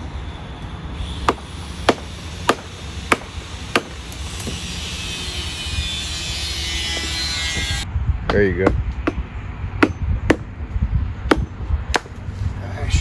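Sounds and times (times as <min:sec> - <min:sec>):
hammer striking wooden wedge: 0:01.3 - 0:10.5, 0:11.3 - 0:12.4.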